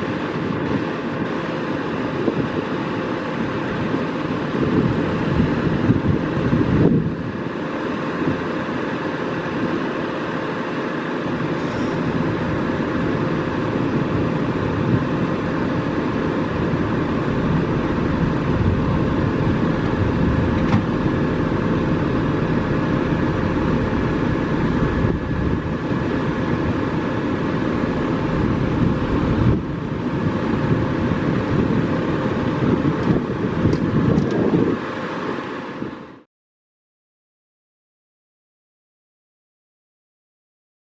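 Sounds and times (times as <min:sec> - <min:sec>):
vehicle rumbling hum: 0:00.0 - 0:36.3
faint steady tones: 0:07.2 - 0:33.5.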